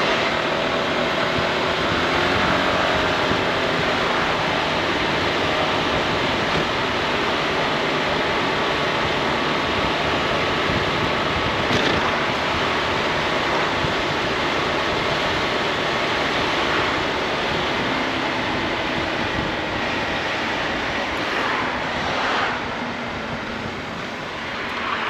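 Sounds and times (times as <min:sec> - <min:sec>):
road noise: 0:00.0 - 0:25.0
wind rush: 0:00.0 - 0:25.0.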